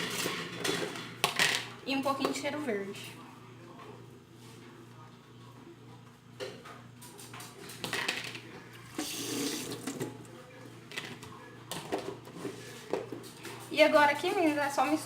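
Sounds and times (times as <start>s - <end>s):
kitchen knocks and clatter: 0.0s - 2.4s
water running from a tap: 9.0s - 10.0s.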